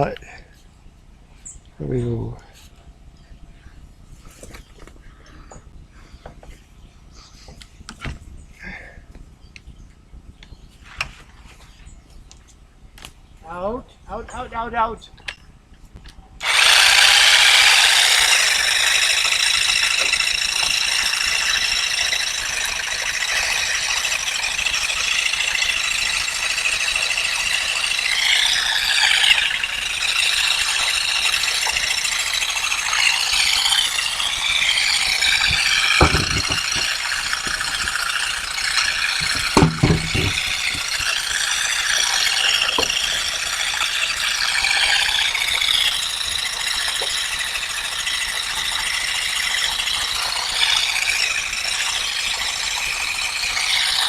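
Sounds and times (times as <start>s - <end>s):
loud mechanical rattling: 16.4s - 54.0s
brief thumps: 39.2s - 41.1s.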